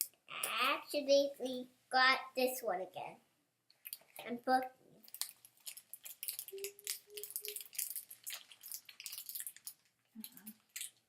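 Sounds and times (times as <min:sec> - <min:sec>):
plastic packaging crinkling: 0:05.0 - 0:11.0.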